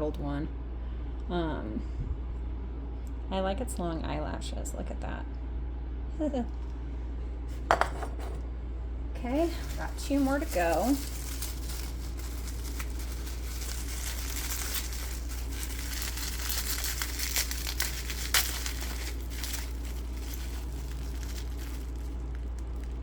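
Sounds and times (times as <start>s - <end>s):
faint low hum: 0.0s - 23.0s
bubble wrap crinkling: 9.2s - 23.0s.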